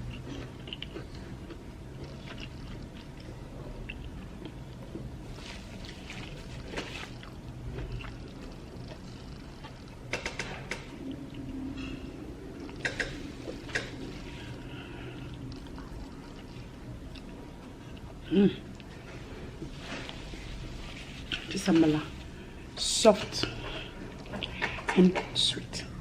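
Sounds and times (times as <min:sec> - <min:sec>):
wet chewing and mouth smacks: 0:00.1 - 0:12.0, 0:12.6 - 0:19.0.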